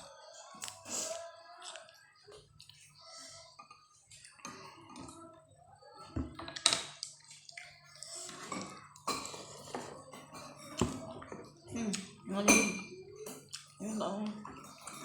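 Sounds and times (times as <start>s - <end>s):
spoon clinking against a bowl: 12.5s - 13.6s.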